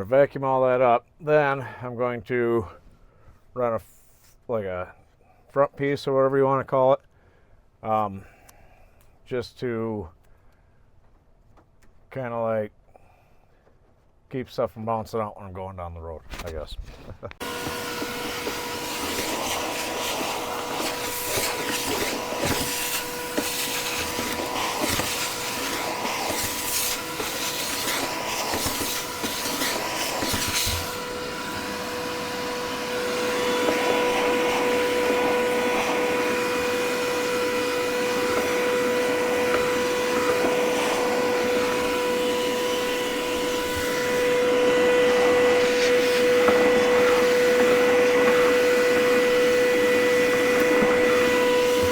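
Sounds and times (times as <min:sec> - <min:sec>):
vacuum cleaner running: 0:17.4 - 0:51.9.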